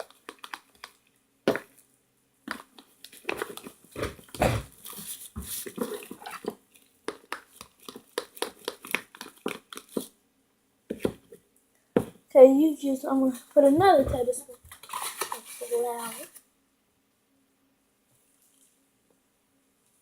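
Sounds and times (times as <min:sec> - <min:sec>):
spoon squishing sticky dough: 0:00.0 - 0:01.9, 0:02.5 - 0:10.2.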